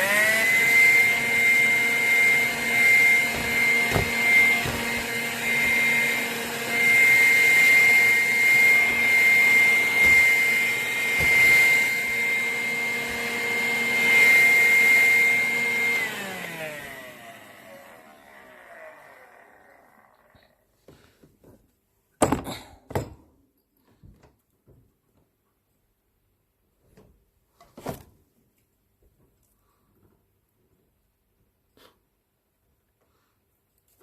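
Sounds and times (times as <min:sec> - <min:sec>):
vacuum cleaner running: 0:00.0 - 0:20.5
vacuum motor winding down: 0:00.0 - 0:20.6.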